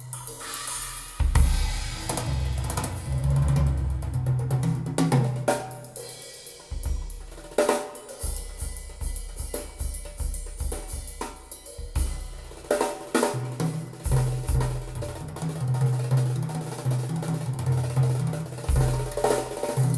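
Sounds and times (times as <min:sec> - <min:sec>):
music with drums and bass: 0:00.0 - 0:19.9.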